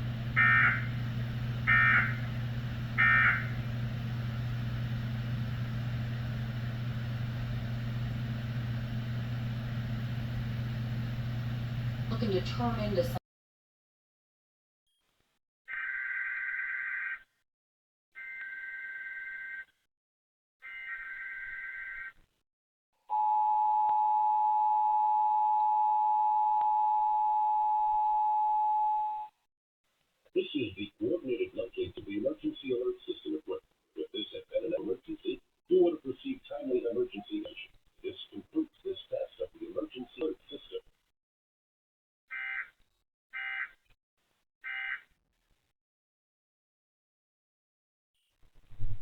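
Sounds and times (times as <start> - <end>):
low hum: 0.0 - 13.2
digital data tone bursts: 0.4 - 0.9
two-tone attention signal: 23.1 - 29.3.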